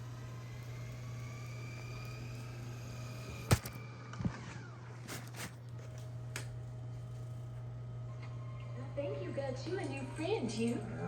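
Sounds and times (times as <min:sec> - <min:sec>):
steady low hum: 0:00.0 - 0:11.0
small thud: 0:03.4 - 0:03.8.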